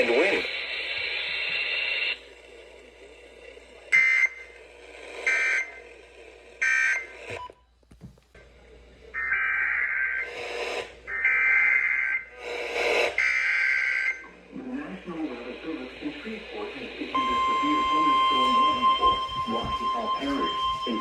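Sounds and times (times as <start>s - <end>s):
digital data bursts: 0.0s - 2.2s, 15.8s - 21.0s.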